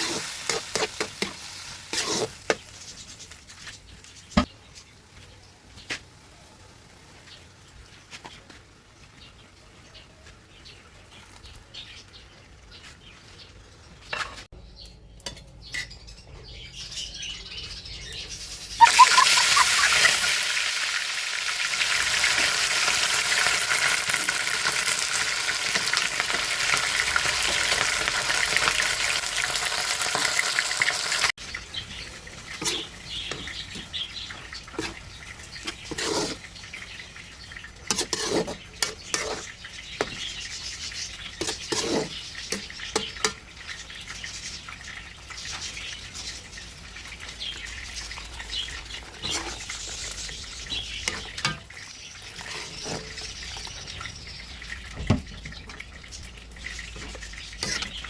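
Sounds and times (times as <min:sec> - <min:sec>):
food sizzling in hot oil: 0:00.0 - 0:03.3, 0:18.2 - 0:58.0.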